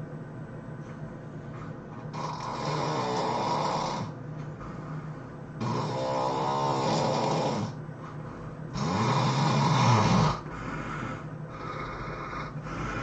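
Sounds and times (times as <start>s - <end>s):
soft breathing: 0.8s - 2.1s, 4.0s - 5.6s, 7.6s - 8.8s, 9.8s - 13.0s
person snoring: 2.1s - 4.2s, 5.6s - 7.8s, 8.7s - 13.0s.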